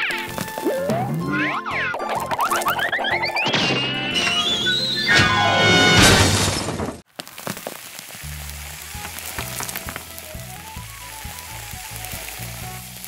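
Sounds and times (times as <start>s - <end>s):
crackling and clicks: 0.0s - 4.8s, 6.5s - 13.0s
cartoon music: 0.0s - 6.0s
crash sound effect: 2.4s - 7.0s.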